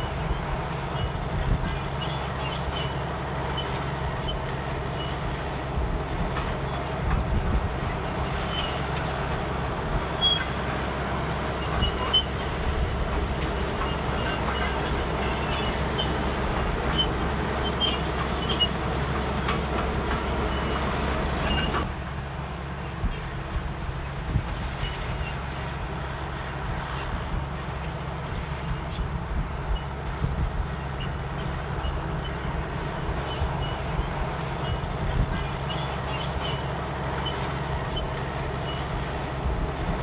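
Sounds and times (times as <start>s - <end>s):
bulldozer diesel engine running: 0.0s - 40.0s
short high squeaks and clinks: 10.2s - 10.7s, 13.7s - 19.5s, 33.2s - 38.9s.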